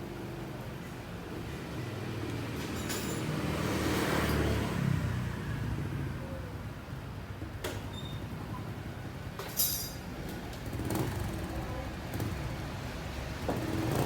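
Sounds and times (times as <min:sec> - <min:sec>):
motorbike engine rumbling: 0:10.6 - 0:14.0.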